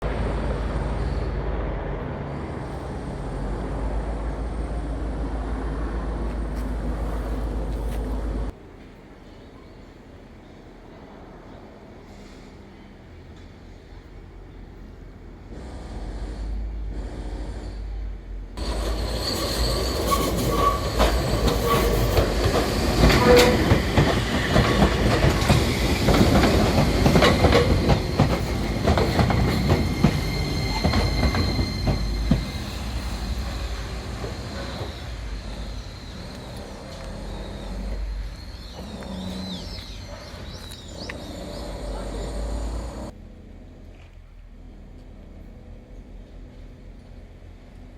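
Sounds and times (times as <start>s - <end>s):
electric train passing: 0.0s - 9.2s, 9.9s - 43.8s
wheels clicking over rail joints: 18.6s - 42.2s
high wheel squeal: 18.6s - 43.1s.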